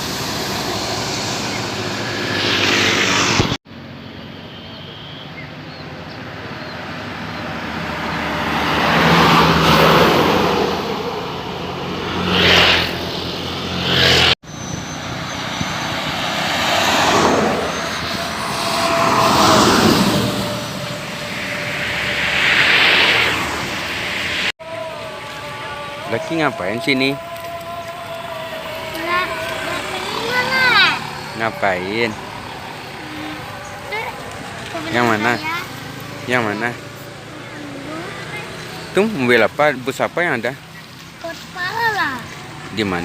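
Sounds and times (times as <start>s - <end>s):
vehicles passing: 0.0s - 43.0s
low engine hum: 5.4s - 39.2s.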